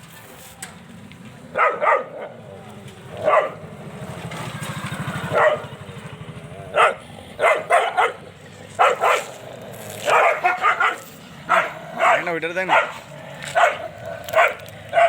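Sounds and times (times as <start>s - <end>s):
low pulsing engine: 0.8s - 15.0s
dogs barking: 1.5s - 2.5s, 3.1s - 4.0s, 5.2s - 5.8s, 6.6s - 15.0s.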